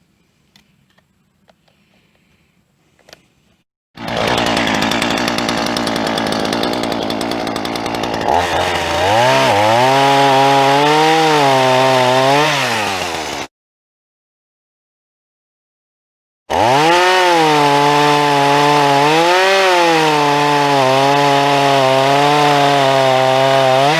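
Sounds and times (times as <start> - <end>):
power saw running: 4.0 - 13.5, 16.5 - 23.9.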